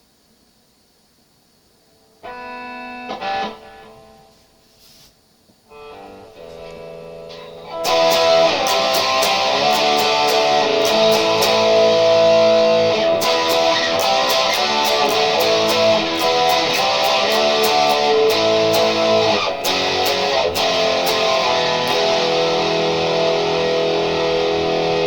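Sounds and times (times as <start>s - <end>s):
electric guitar chords: 2.2s - 4.3s, 5.7s - 25.0s.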